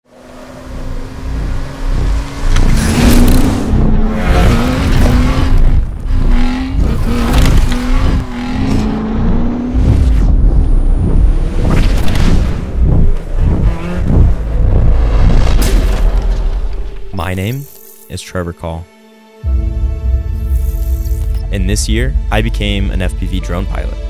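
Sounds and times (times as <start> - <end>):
race car engine revving: 0.1 - 15.6
swelling whooshes: 0.6 - 15.6.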